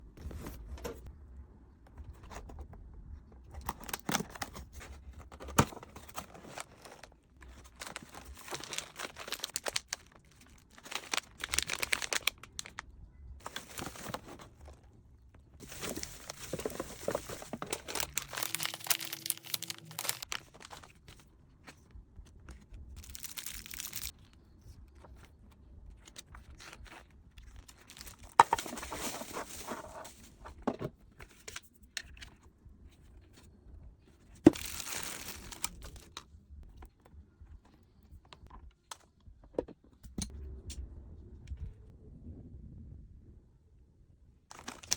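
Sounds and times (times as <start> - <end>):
paper and plastic tearing: 15.6 - 21.0, 23.0 - 24.1, 34.5 - 36.0.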